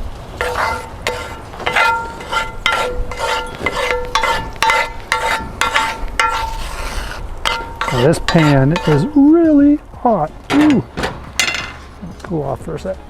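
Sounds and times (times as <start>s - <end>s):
spatula scraping a frying pan: 0.4s - 9.5s
metal pan ringing: 0.4s - 9.6s, 10.5s - 11.9s.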